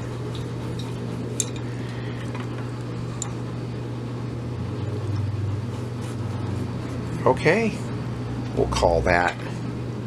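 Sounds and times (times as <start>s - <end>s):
low background hum: 0.0s - 10.0s.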